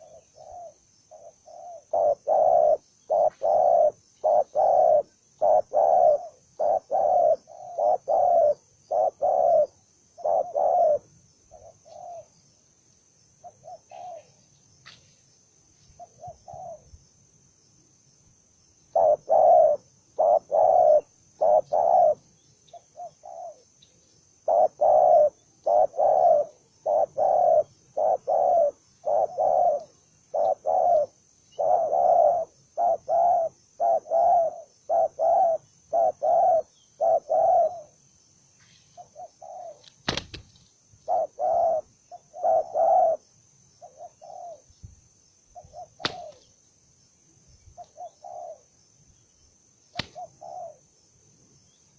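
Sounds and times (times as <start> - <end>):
dove cooing: 0.0 - 12.3, 13.4 - 14.4, 16.0 - 16.9, 18.9 - 23.7, 24.4 - 38.0, 39.0 - 40.4, 41.0 - 43.2, 43.8 - 44.7, 45.6 - 46.5, 47.8 - 48.7, 50.0 - 50.8.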